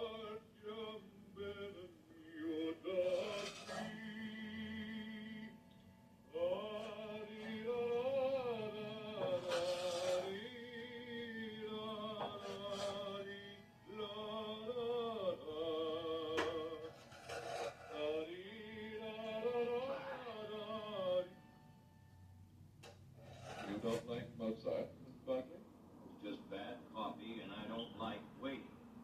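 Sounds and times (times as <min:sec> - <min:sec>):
person singing with vibrato: 0:00.0 - 0:21.4.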